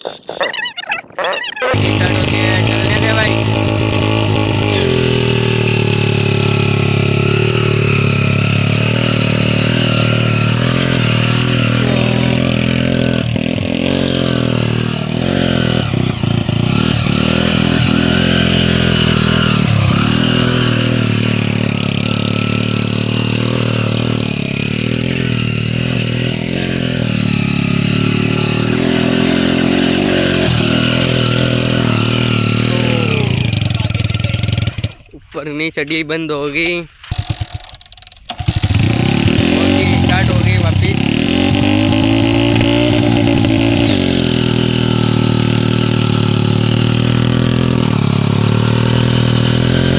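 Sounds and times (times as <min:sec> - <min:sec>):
motorcycle engine revving under load: 0:00.0 - 0:35.2, 0:37.0 - 0:49.9.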